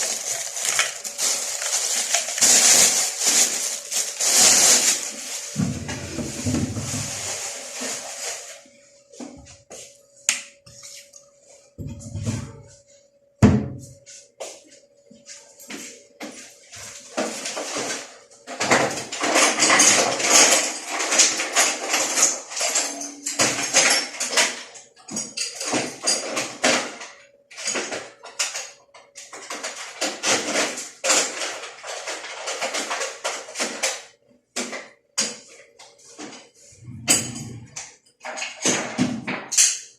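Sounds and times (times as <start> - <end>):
machine parts clattering and scraping: 0.0 - 8.6, 16.8 - 34.1, 35.2 - 39.8.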